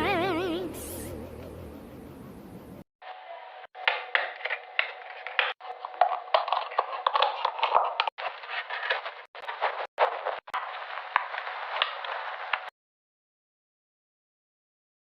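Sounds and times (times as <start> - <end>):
small objects clicking and tapping: 3.8 - 10.4.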